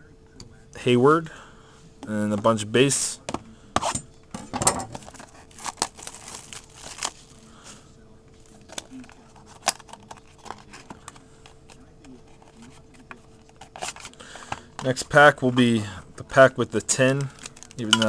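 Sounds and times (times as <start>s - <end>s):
wrapper crinkling and tearing: 5.0s - 7.7s
cards clicking and rustling: 8.4s - 15.0s.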